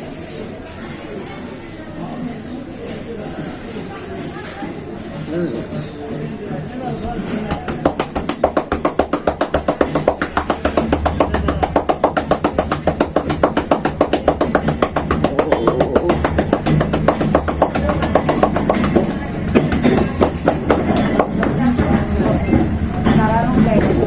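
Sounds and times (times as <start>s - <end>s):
hands slapping in fast rhythm: 7.5s - 21.8s.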